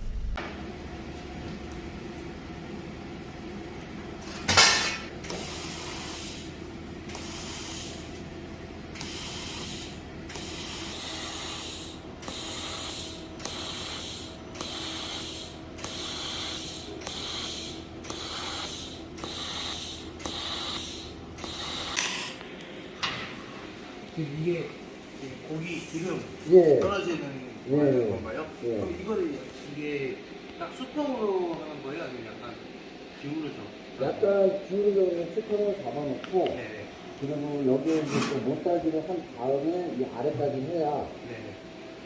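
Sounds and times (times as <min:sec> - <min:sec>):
machine hum: 0:00.0 - 0:37.7
short hissing strokes: 0:05.2 - 0:08.1, 0:09.0 - 0:22.4.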